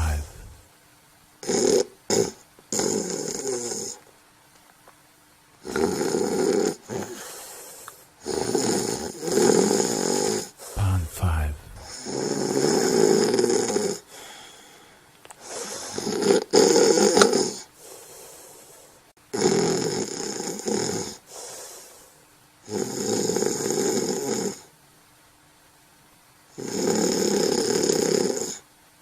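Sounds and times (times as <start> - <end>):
quiet breathing: 0.0 - 0.6, 7.0 - 8.2, 10.5 - 12.0, 14.0 - 16.0, 17.7 - 19.1
loud snoring: 1.4 - 4.0, 5.6 - 7.2, 8.2 - 10.5, 15.5 - 17.6, 19.4 - 21.2, 22.7 - 24.6, 26.6 - 28.6.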